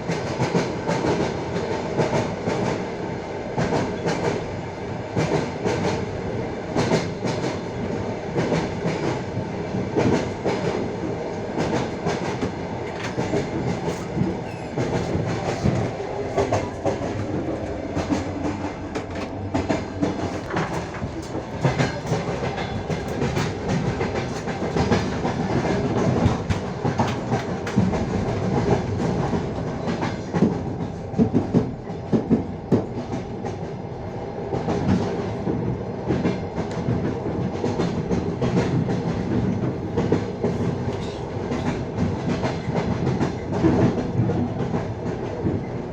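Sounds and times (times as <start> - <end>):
train carriage rumble: 0.0 - 45.9
train wheels clacking over rail joints: 11.6 - 33.6, 34.6 - 45.7.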